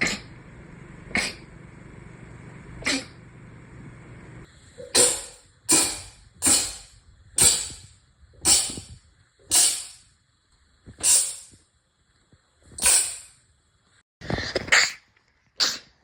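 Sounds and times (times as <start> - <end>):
sharp sneezes: 0.0 - 0.3, 1.1 - 1.5, 2.8 - 3.2, 15.6 - 16.0.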